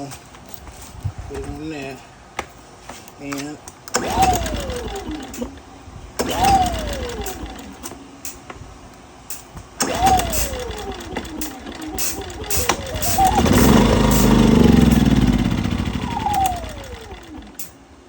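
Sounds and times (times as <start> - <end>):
generator engine spinning up: 3.9 - 7.9, 9.8 - 17.8
generator engine catching: 3.9 - 8.5, 9.4 - 17.8.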